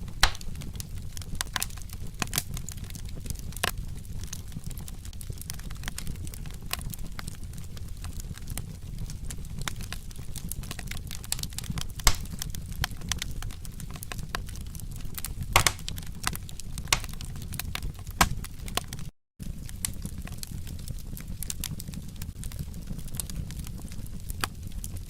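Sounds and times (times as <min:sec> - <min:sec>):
sharp fire pops: 0:00.0 - 0:25.0
wood fire crackling: 0:00.0 - 0:25.0.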